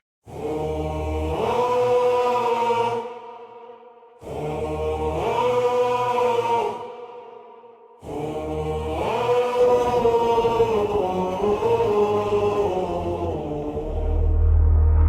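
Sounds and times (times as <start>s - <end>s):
choral chant: 0.3s - 15.0s
deep bass note: 13.8s - 15.0s.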